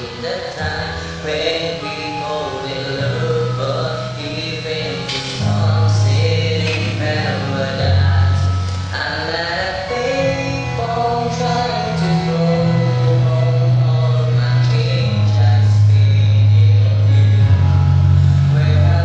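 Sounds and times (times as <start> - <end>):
song with singing: 0.0 - 19.0
sustained bass notes: 0.0 - 19.0.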